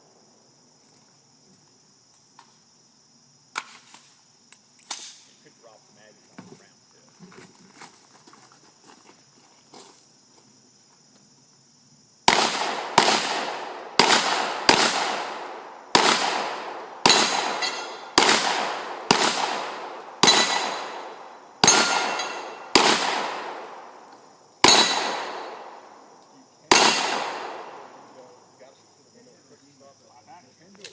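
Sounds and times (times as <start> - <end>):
gunshots with echo: 12.3 - 24.0, 24.6 - 25.8, 26.7 - 28.3.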